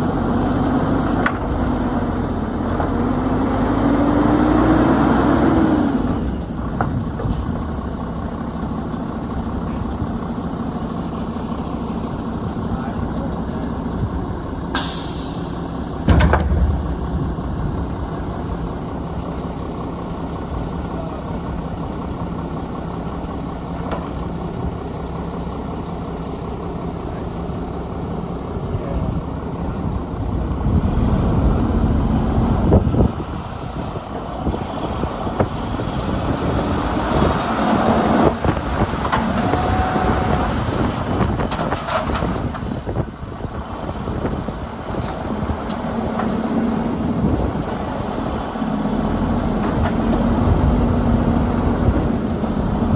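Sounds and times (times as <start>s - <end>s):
garbage truck diesel engine: 0.0s - 52.9s
air hiss: 14.8s - 15.8s
loud bang: 14.8s - 19.0s.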